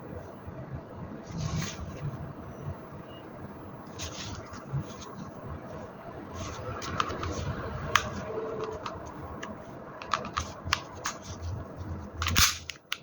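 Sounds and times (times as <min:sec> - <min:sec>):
airsoft pistol clicking: 0:12.2 - 0:13.0.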